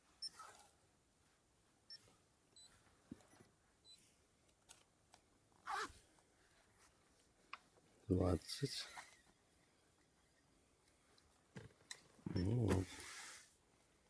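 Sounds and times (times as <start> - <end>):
short electronic beeps: 12.3 - 12.6.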